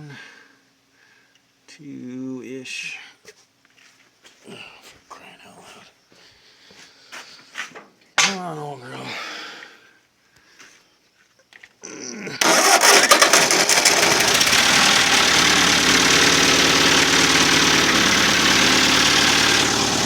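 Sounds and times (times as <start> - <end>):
tractor engine cranking and idling: 12.4 - 20.0.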